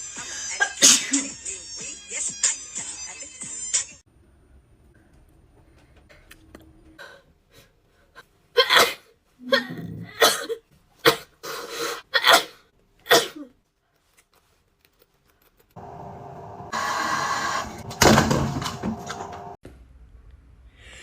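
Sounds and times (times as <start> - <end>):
woman sneezing: 0.6 - 1.2.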